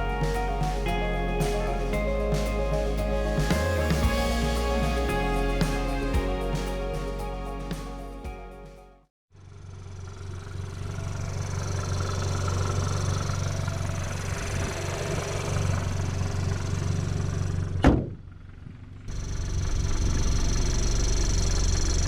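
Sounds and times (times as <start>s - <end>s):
car engine while driving: 9.4s - 22.0s.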